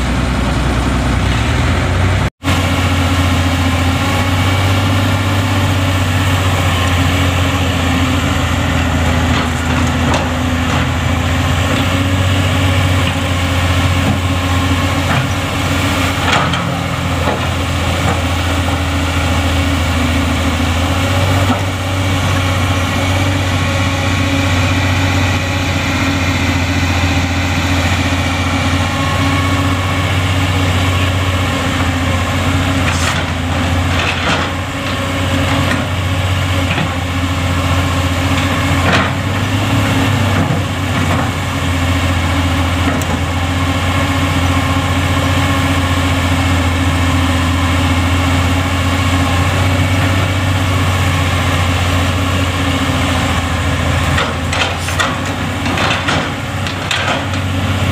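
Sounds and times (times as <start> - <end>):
diesel engine humming: 0.0 - 57.9.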